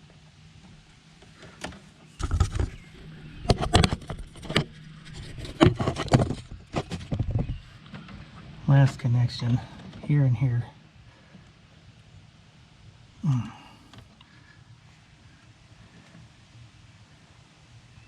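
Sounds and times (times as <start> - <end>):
knocks clicks and scraping: 1.2 - 9.2.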